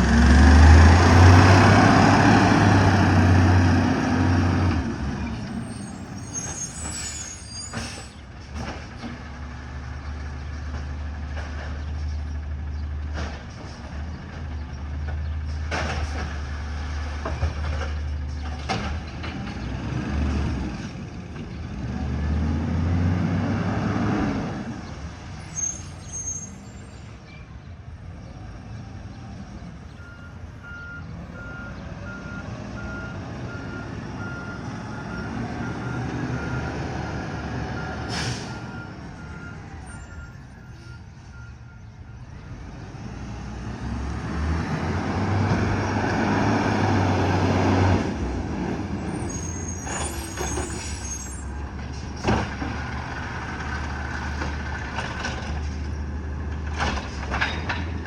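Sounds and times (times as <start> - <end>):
reversing beeps: 30.0 - 36.8, 37.8 - 42.4.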